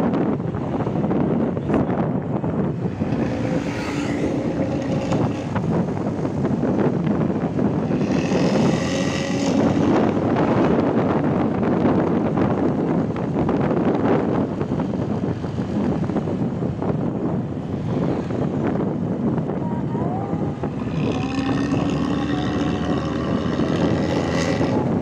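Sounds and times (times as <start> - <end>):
bus engine with growling exhaust: 0.0 - 25.0
wind on microphone: 0.0 - 25.0.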